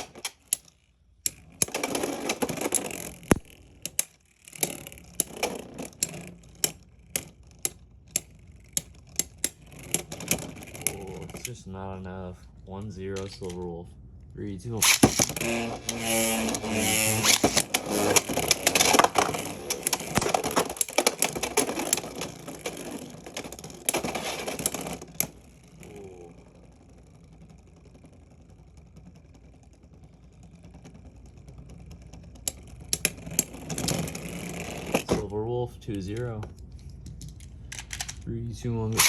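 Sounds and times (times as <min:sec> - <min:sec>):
clicks: 0:00.0 - 0:05.3
spinning top whirring: 0:00.0 - 0:39.0
spinning tops clashing: 0:14.8 - 0:35.0.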